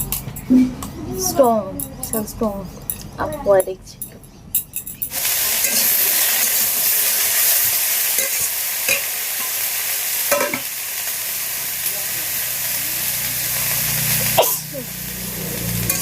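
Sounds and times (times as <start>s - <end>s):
food sizzling in hot oil: 5.1s - 16.0s.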